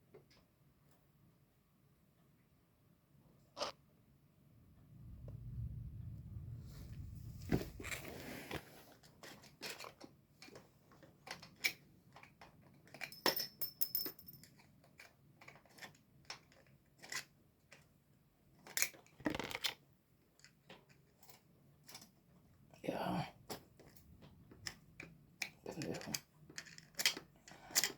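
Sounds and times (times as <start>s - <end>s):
knocks and scrapes: 4.8s - 9.0s
metal parts clicking and clinking: 12.8s - 15.9s, 25.4s - 27.9s.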